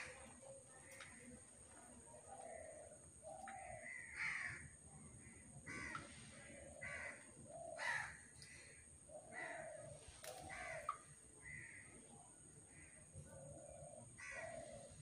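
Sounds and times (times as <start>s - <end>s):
harsh bird calls: 5.3s - 15.0s.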